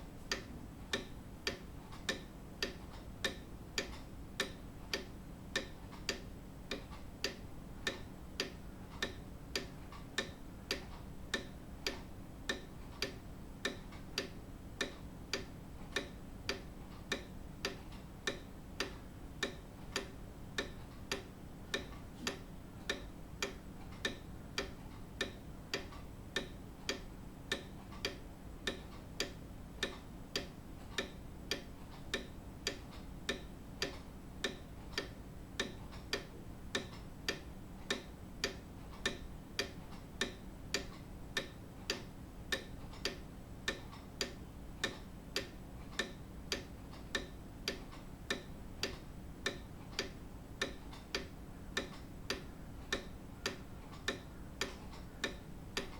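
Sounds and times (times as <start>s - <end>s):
clock ticking: 0.0s - 55.9s.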